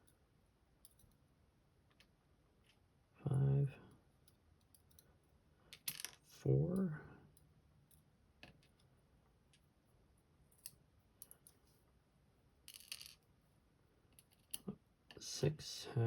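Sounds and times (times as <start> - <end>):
small lock pins clicking: 0.8 - 1.2.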